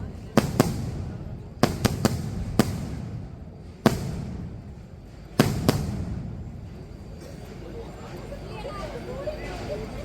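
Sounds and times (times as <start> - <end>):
fireworks bangs with rumbling echo: 0.0 - 7.0.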